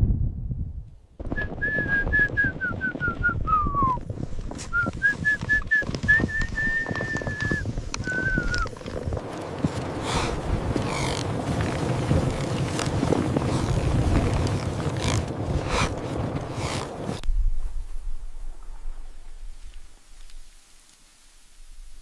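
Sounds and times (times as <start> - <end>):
person whistling a tune: 1.4 - 4.0, 4.7 - 8.7.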